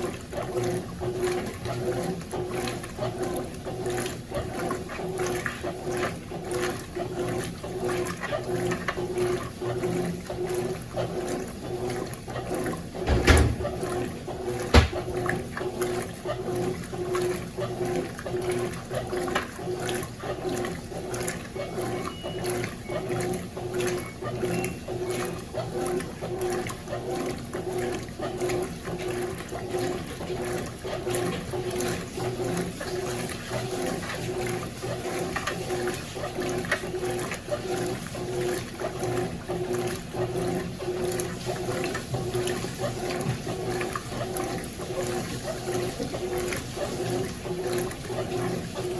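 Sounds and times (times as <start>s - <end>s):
washing machine churning water: 0.0s - 48.9s
dull thump: 13.1s - 13.8s, 14.7s - 15.1s.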